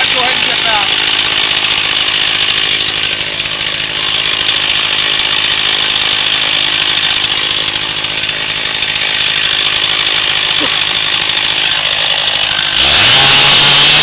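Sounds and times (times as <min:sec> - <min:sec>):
chainsaw running: 0:00.0 - 0:14.0.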